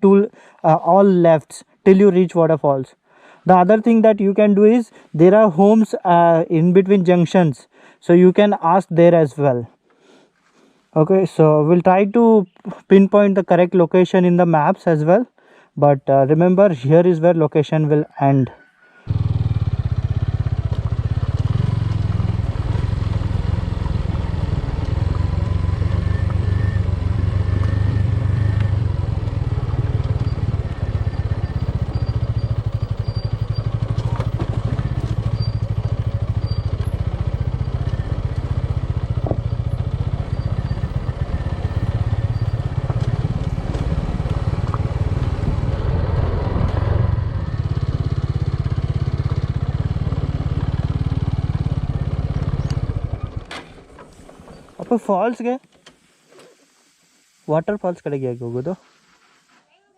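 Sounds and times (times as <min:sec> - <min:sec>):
motorcycle engine rumble: 0:19.1 - 0:55.4
wind buffeting microphone: 0:43.2 - 0:47.3.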